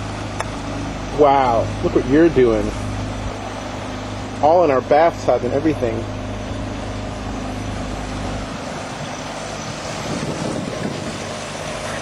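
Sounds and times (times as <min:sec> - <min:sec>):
boat motor running: 0:00.0 - 0:12.0
wind on microphone: 0:05.8 - 0:12.0.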